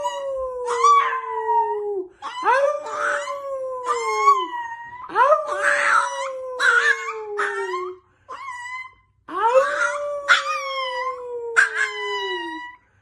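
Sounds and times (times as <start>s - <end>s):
dog howling: 0.0s - 12.8s
dog yipping: 2.2s - 9.0s, 9.6s - 12.8s.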